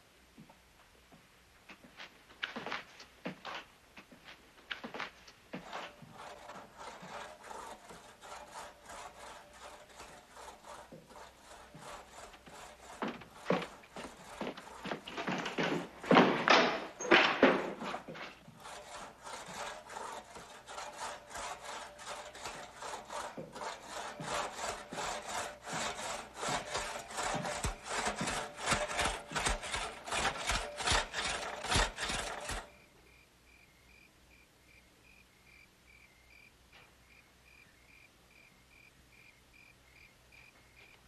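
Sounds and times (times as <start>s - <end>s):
handsaw cutting wood: 4.8s - 32.8s
crickets chirping: 33.1s - 41.0s.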